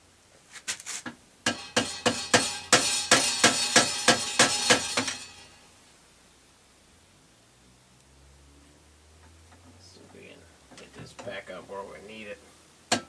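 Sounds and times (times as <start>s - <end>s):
sharp metallic clinks: 1.6s - 5.6s.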